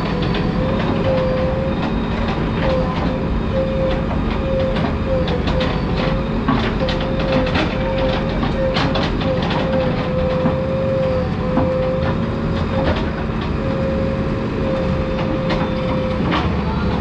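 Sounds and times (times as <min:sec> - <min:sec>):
diesel engine running with whine: 0:00.0 - 0:17.0.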